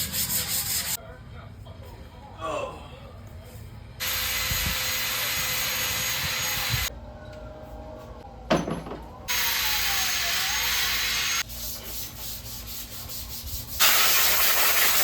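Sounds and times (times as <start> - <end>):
power tool hissing: 4.0 - 6.9, 9.3 - 11.4, 13.8 - 15.0.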